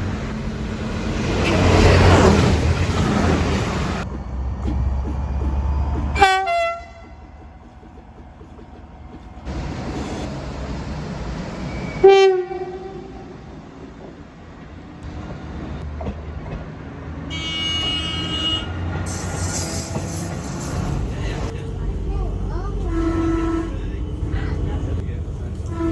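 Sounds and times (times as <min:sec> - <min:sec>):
low engine rumble: 0:00.0 - 0:11.8, 0:20.4 - 0:25.9
higher-pitched electric train horn: 0:06.2 - 0:07.1, 0:12.0 - 0:13.3, 0:17.3 - 0:20.0, 0:22.8 - 0:23.9, 0:25.6 - 0:25.9
train air horn blasts: 0:06.2 - 0:07.1, 0:12.0 - 0:13.2, 0:17.3 - 0:20.4, 0:22.8 - 0:23.8, 0:25.6 - 0:25.9.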